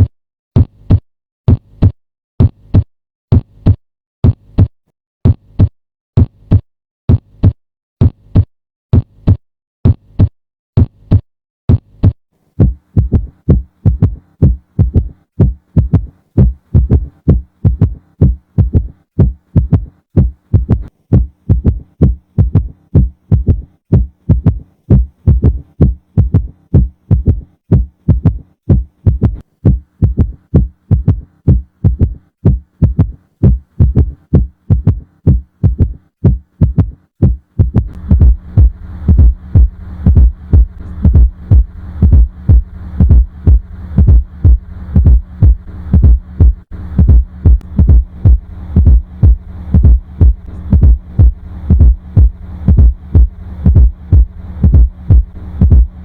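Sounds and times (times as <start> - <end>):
heartbeat thuds: 5.3 - 56.0.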